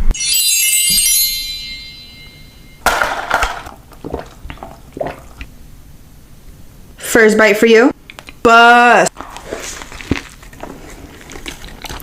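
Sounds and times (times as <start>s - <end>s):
shimmering chime: 0.1s - 2.8s.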